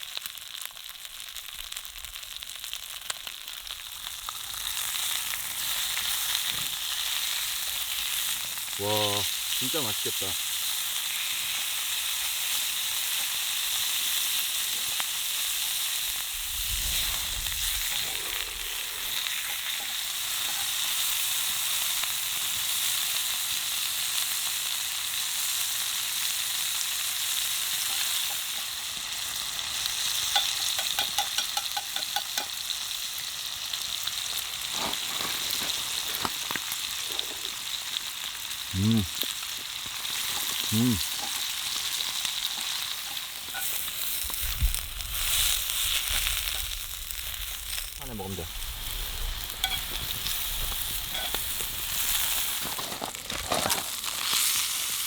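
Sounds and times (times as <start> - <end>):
food sizzling in a pan: 0.0 - 55.0
short hum-like voice sounds: 38.7 - 39.1.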